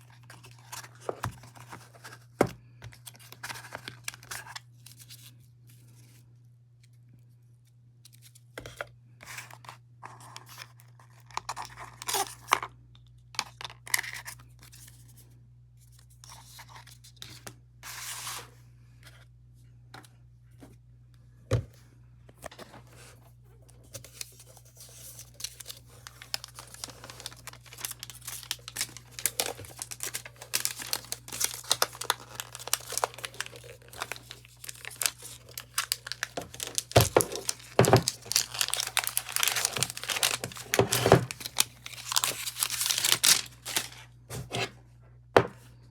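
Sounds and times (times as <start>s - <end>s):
packaging crinkling: 23.9s - 44.0s
paper tearing: 26.1s - 44.0s.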